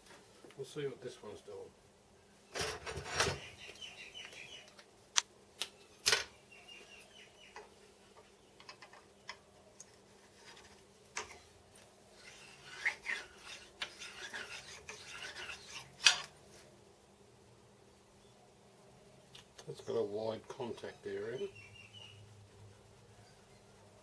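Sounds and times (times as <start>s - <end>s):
metal parts rubbing: 12.2s - 16.4s
small metal knocks and clinks: 16.0s - 16.4s.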